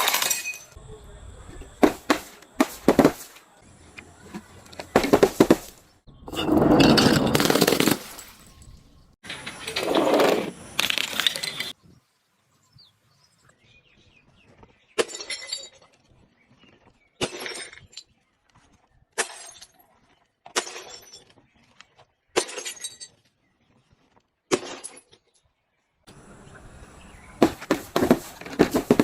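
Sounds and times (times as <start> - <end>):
glass bottles smashing: 0.0 - 0.8, 6.3 - 9.0, 15.0 - 15.9, 17.2 - 18.0, 19.2 - 19.8, 20.6 - 21.3, 22.4 - 23.2.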